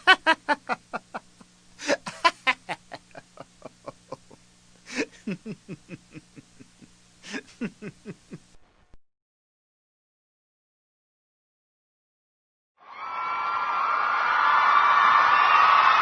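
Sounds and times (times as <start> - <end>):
person laughing: 0.0 - 8.6.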